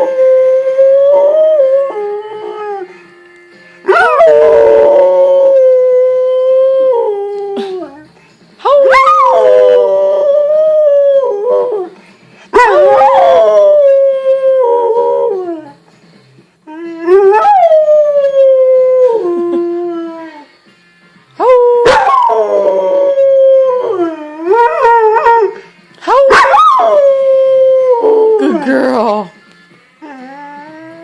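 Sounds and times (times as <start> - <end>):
dog howling: 12.6 - 15.5.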